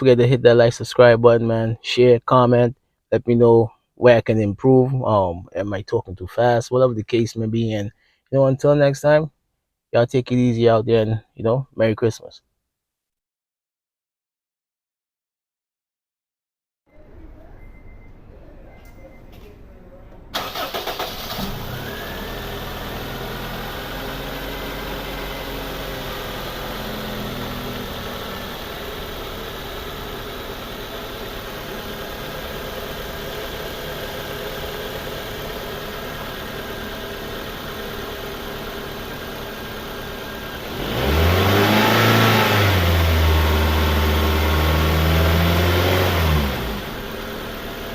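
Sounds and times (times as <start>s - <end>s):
car engine idling and revving: 20.4s - 47.9s.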